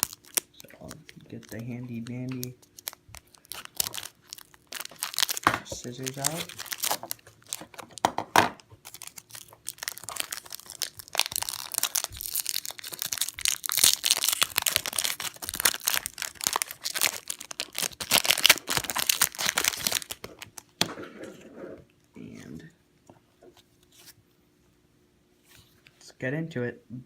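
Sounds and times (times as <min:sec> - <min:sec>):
scissors cutting wrapper: 0:00.0 - 0:08.0, 0:08.8 - 0:20.6
wrapper crinkling and tearing: 0:00.0 - 0:08.1, 0:08.8 - 0:20.8.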